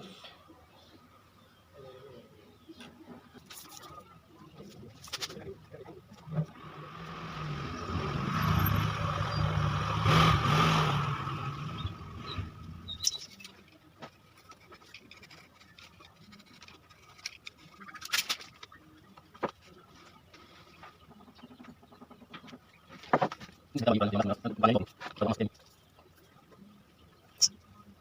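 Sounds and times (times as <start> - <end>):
vehicle engine passing by: 6.3 - 13.1.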